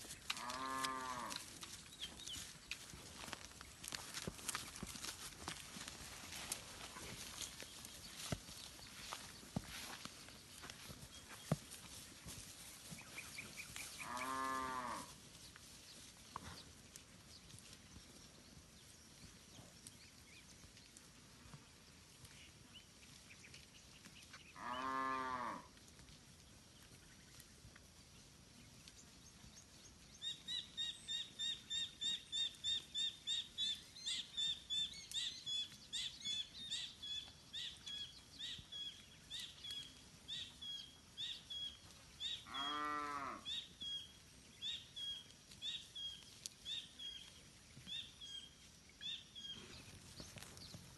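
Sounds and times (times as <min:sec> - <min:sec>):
cattle mooing: 0:00.3 - 0:01.4, 0:14.0 - 0:15.1, 0:24.6 - 0:25.6, 0:42.5 - 0:43.4.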